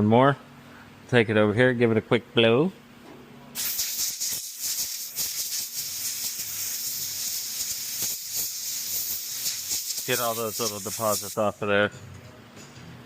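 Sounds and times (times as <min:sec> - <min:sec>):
compressed-air blow gun hissing: 0:03.6 - 0:11.5.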